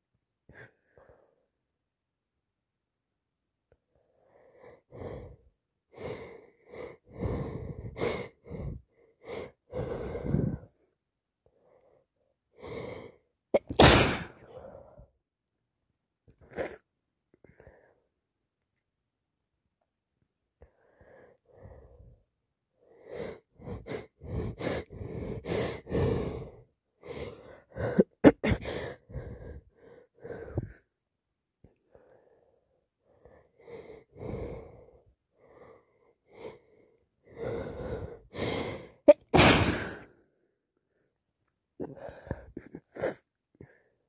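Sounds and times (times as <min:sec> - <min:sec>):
loud sneeze: 0:13.6 - 0:14.4, 0:39.1 - 0:40.0.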